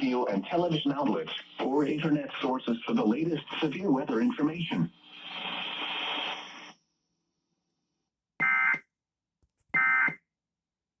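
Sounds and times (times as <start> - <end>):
radio hiss: 0.0 - 6.7.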